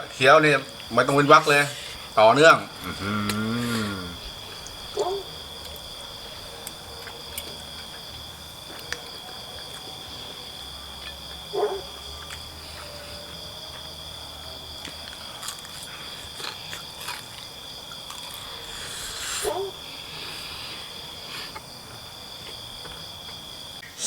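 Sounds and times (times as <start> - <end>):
crickets trilling: 0.0 - 24.0
short low calls: 2.8 - 4.4.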